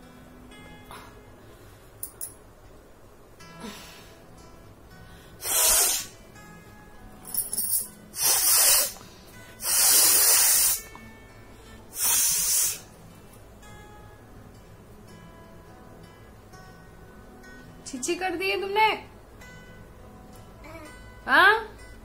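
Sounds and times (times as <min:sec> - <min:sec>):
person blowing nose: 0:05.4 - 0:06.2, 0:08.2 - 0:09.0, 0:09.6 - 0:10.9, 0:11.9 - 0:13.0.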